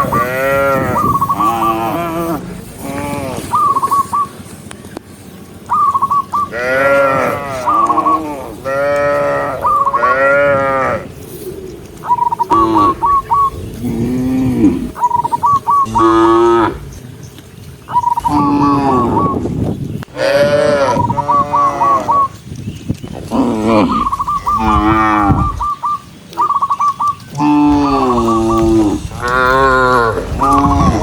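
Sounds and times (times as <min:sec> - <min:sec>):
cattle mooing: 0:00.0 - 0:03.7, 0:06.5 - 0:11.3, 0:12.0 - 0:15.0, 0:15.8 - 0:17.0, 0:18.2 - 0:19.4, 0:20.1 - 0:22.3, 0:23.2 - 0:25.8, 0:27.3 - 0:31.0
short higher animal calls: 0:23.3 - 0:31.0.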